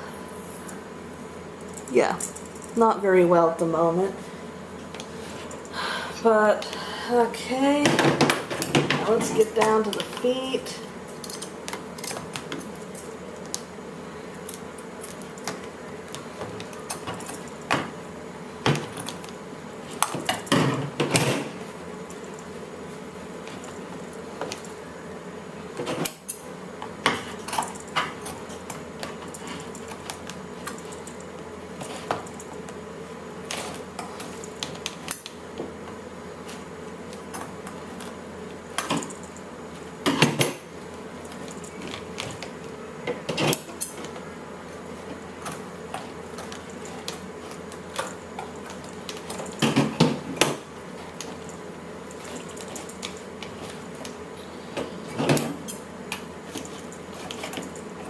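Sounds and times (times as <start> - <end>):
faint steady hum: 0.0 - 58.0.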